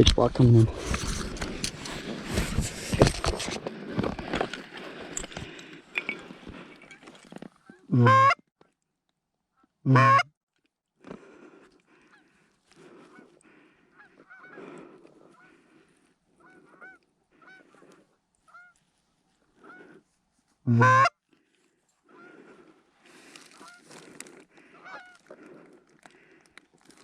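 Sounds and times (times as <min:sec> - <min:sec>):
close goose honk: 0:07.9 - 0:08.4, 0:09.9 - 0:10.2, 0:20.7 - 0:21.1
flock of geese honking: 0:12.0 - 0:18.9, 0:19.5 - 0:20.0, 0:20.7 - 0:21.1, 0:22.1 - 0:24.0, 0:24.6 - 0:25.6.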